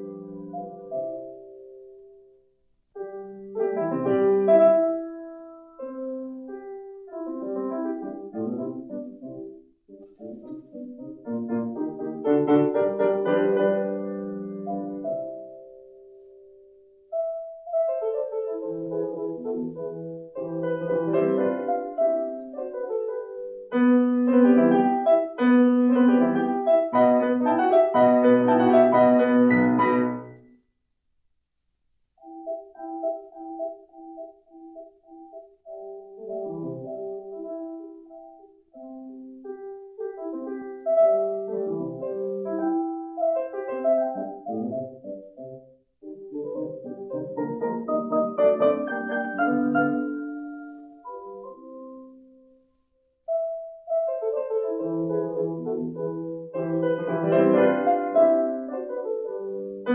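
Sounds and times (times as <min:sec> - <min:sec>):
solo classical piano: 0:00.0 - 0:30.7, 0:32.2 - 0:59.9.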